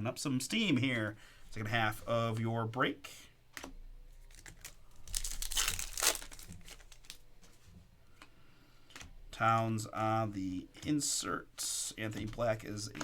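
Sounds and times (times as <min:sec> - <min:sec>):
foil wrapper tearing and crinkling: 0:04.2 - 0:07.2
clicks and rustles of handling: 0:10.8 - 0:13.0.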